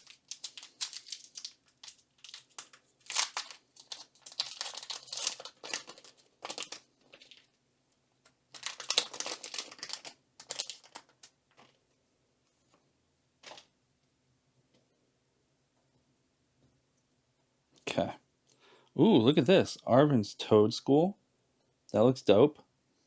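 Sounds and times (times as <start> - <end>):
foil wrapper tearing and crinkling: 0.0 - 7.5, 8.5 - 11.7.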